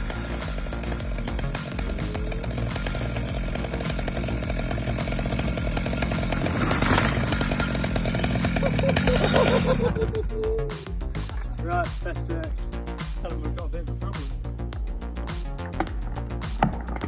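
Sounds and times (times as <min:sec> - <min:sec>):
chainsaw running: 0:00.0 - 0:11.4
background music: 0:00.0 - 0:17.0.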